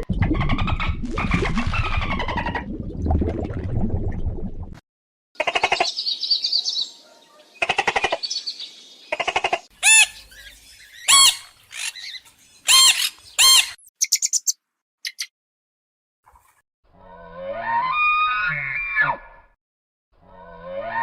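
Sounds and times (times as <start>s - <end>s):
animal squawks: 9.1s - 10.2s, 11.1s - 12.1s.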